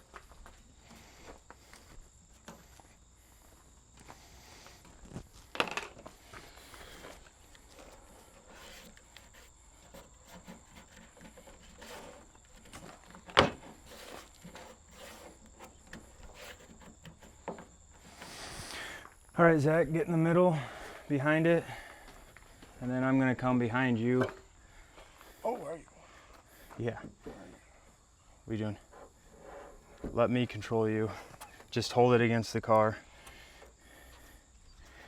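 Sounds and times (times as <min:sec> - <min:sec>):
footsteps: 0:00.0 - 0:15.6
handling noises: 0:00.0 - 0:19.2.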